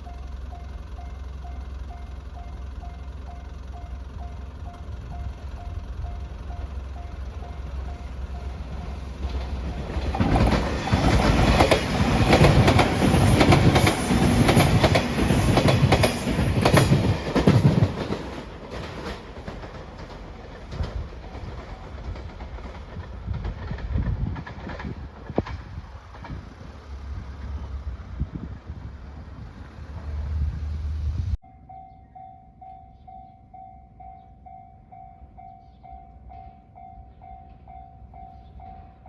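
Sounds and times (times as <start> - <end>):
train wheels clacking over rails: 4.7 - 27.7.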